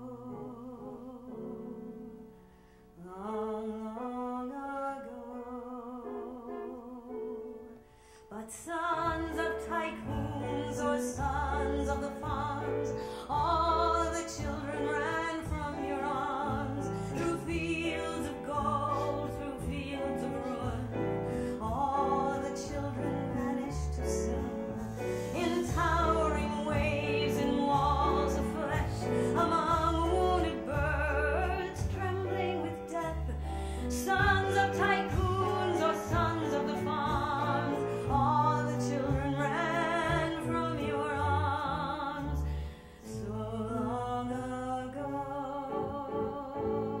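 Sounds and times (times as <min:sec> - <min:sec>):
piano accompaniment: 0:00.0 - 0:47.0.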